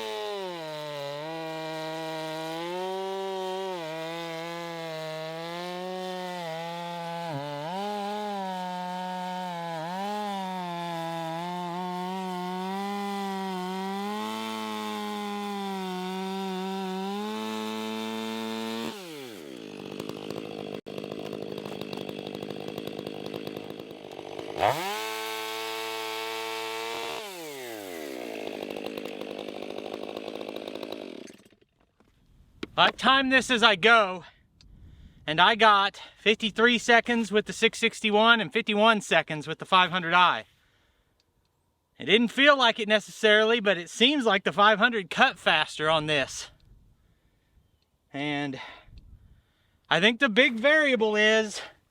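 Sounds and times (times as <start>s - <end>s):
chainsaw cutting log: 0.0s - 33.5s.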